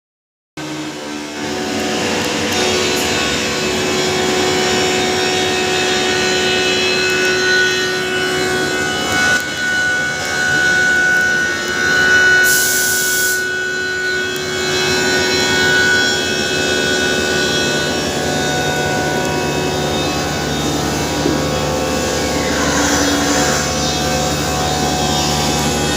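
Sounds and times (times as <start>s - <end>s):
cutter cutting metal: 0.6s - 25.9s
machine spindle whine: 0.6s - 25.9s
high hiss burst: 12.4s - 13.4s.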